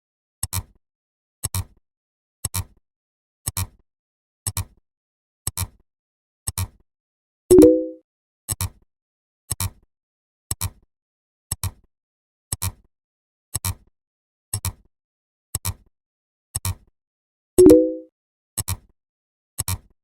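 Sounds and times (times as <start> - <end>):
brief pitched tone: 7.5 - 8.0, 17.6 - 18.1.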